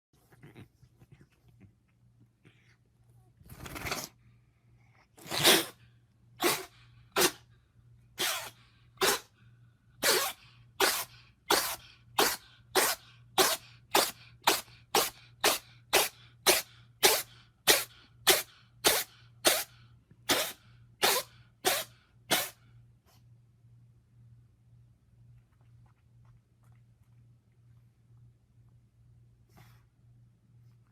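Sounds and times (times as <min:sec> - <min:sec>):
cat sneezing: 0:03.6 - 0:04.2, 0:05.2 - 0:07.4, 0:08.2 - 0:09.3, 0:10.0 - 0:22.7.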